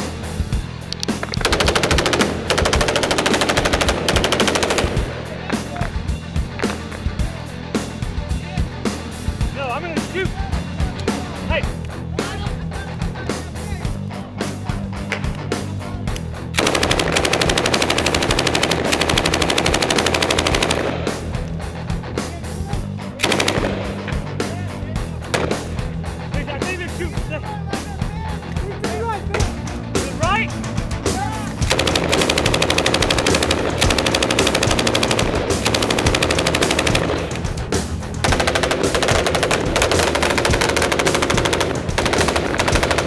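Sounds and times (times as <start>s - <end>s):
music: 0.0s - 43.0s
automatic gunfire: 1.0s - 6.0s, 16.6s - 21.4s, 23.2s - 24.2s, 25.3s - 25.9s, 31.5s - 43.0s.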